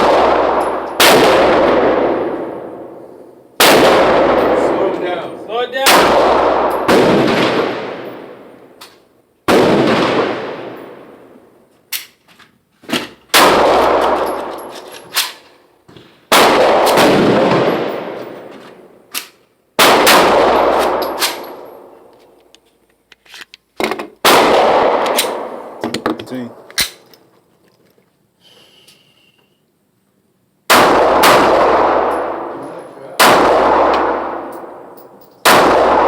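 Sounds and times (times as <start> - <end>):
distant fainter gunshots: 0.0 - 3.0, 3.6 - 5.2, 5.8 - 8.6, 9.5 - 11.4, 13.3 - 14.4, 16.3 - 18.4, 19.8 - 21.9, 24.2 - 25.8, 30.7 - 32.6, 33.2 - 36.0
loud reverberant gunshots: 0.0 - 8.8, 9.4 - 11.6, 13.3 - 14.7, 16.3 - 19.1, 19.8 - 22.0, 24.2 - 25.8, 30.7 - 36.0.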